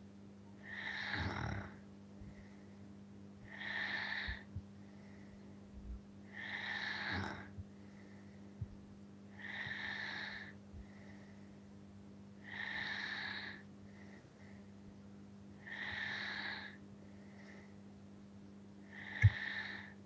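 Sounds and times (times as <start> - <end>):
man snoring: 0.6 - 1.7, 3.5 - 4.4, 6.4 - 7.5, 9.4 - 10.5, 12.5 - 13.6, 18.9 - 19.9
faint breaths: 0.6 - 15.0, 15.6 - 18.0, 18.8 - 20.0.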